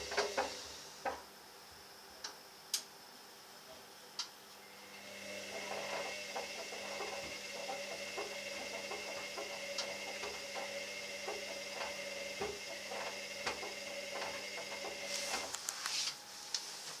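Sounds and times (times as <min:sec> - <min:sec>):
washer-dryer motor hum: 0:00.0 - 0:17.0.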